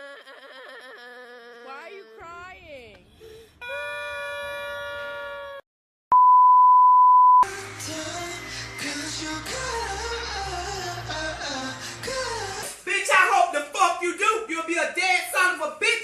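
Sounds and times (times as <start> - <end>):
censor bleep: 6.1 - 7.5
pop music: 7.4 - 13.9.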